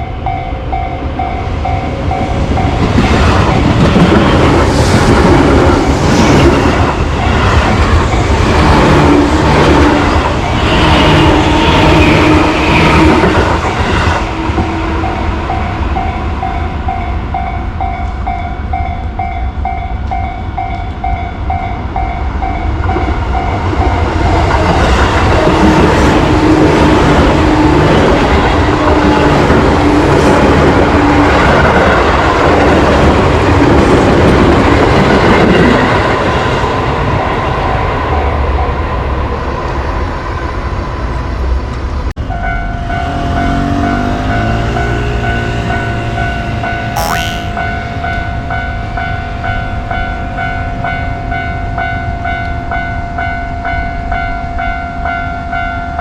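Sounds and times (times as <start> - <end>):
level-crossing warning bell ringing: 0.0 - 4.0, 42.2 - 46.9, 47.5 - 56.0.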